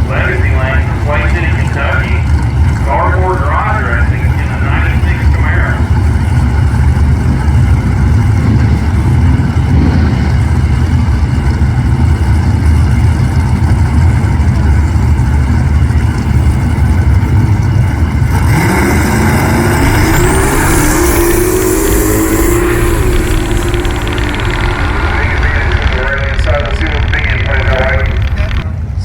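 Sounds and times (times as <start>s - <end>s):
racing engines rumbling: 0.0s - 29.0s
engine revving hard: 8.2s - 10.7s, 18.2s - 28.6s.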